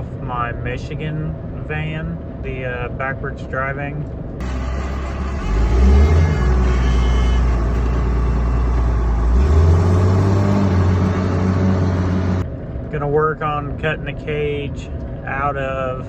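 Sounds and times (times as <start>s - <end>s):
vehicle engine droning: 4.2s - 13.0s.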